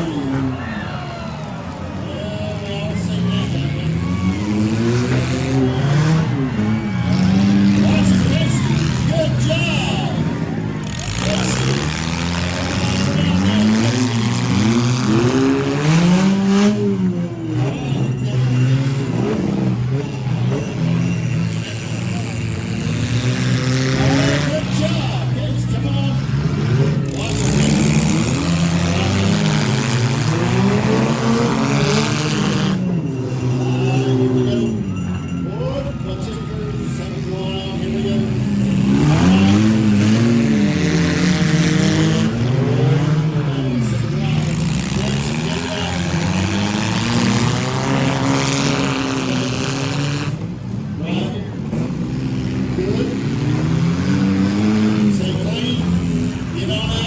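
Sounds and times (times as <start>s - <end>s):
car engines revving: 0.0s - 57.0s.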